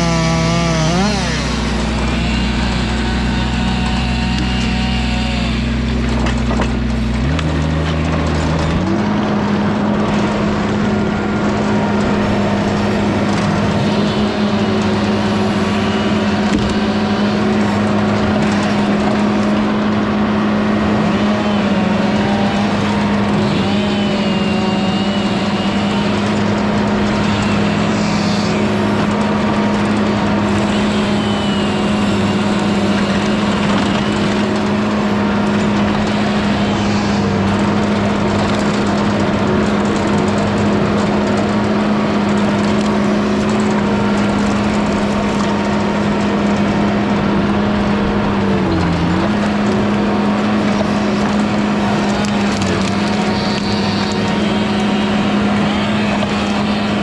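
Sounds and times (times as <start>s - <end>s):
skid steer engine running: 0.0s - 57.0s.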